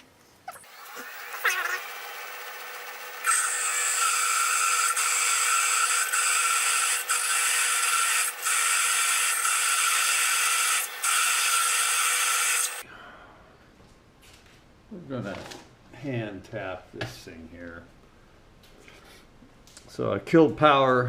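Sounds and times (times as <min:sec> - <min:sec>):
drill scraping cut: 0:00.5 - 0:12.8
lathe running hum: 0:00.7 - 0:12.8.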